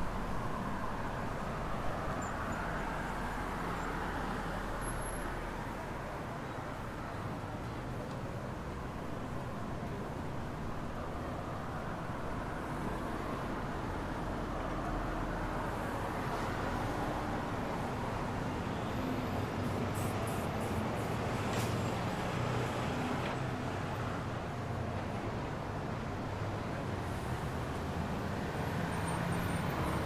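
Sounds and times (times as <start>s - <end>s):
passing vehicles: 0.0s - 30.0s
heavy engine: 12.0s - 30.0s.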